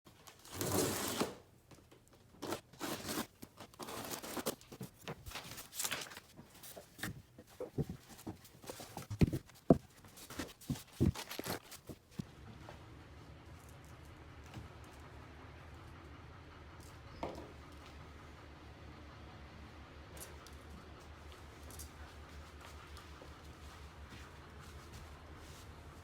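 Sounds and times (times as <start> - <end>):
packaging ripping and rustling: 2.4 - 12.2.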